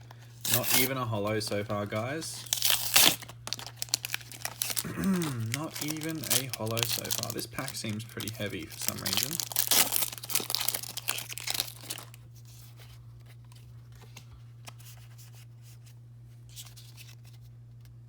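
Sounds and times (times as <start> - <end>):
foil wrapper tearing and crinkling: 0.0 - 12.7
low steady hum: 0.0 - 18.0.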